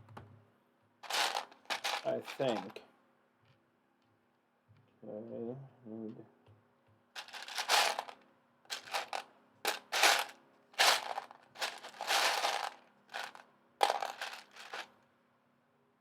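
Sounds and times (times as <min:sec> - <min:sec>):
plastic toy bricks rattling: 0:01.0 - 0:02.8, 0:07.2 - 0:14.9.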